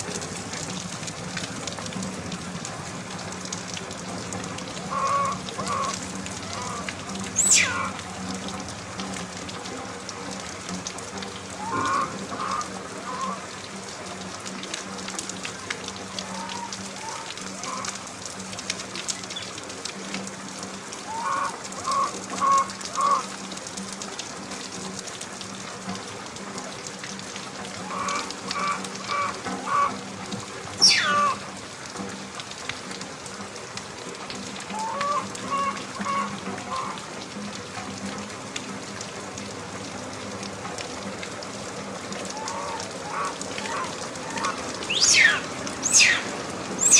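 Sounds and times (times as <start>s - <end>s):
rain falling: 0.0s - 46.9s
animal calls: 7.4s - 8.0s, 30.8s - 31.4s, 42.3s - 46.9s
sharp falling squeal: 30.8s - 31.3s, 44.9s - 46.9s.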